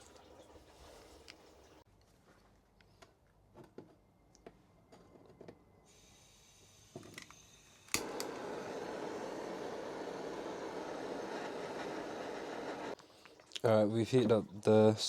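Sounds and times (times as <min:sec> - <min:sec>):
blowtorch flame hissing: 0:05.9 - 0:13.1
blowtorch lighting click: 0:07.2 - 0:13.0.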